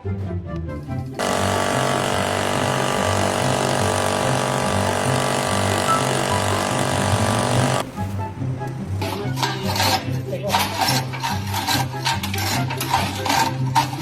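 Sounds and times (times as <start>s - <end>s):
machine running with whine: 1.2s - 7.8s.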